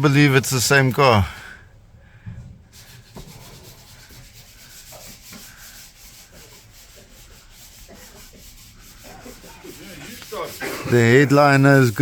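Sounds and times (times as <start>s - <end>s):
cloth rubbing on car surface: 2.7s - 12.0s.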